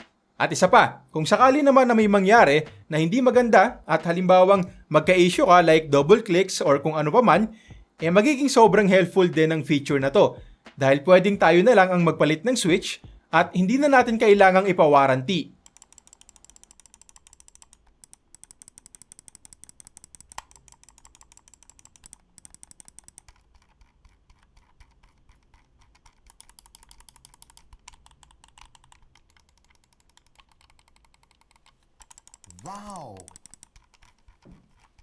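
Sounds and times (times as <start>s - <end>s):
mechanical switches clicking: 15.6s - 23.3s, 26.4s - 33.7s.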